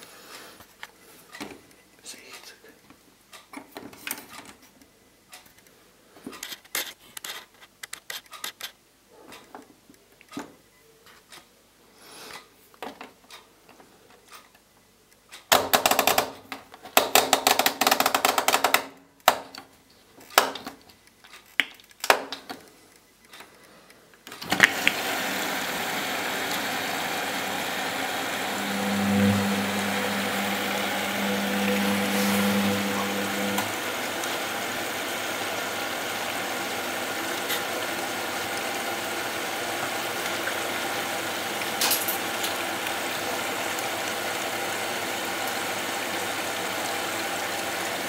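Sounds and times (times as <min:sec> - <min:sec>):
water rushing into machine: 0:24.7 - 0:44.6.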